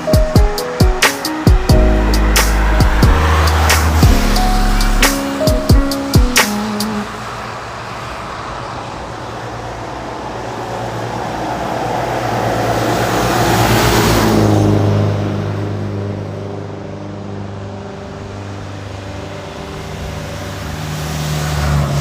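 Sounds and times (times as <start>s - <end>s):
car tyres hissing on wet road: 2.0s - 5.4s, 6.4s - 11.6s, 20.1s - 22.0s.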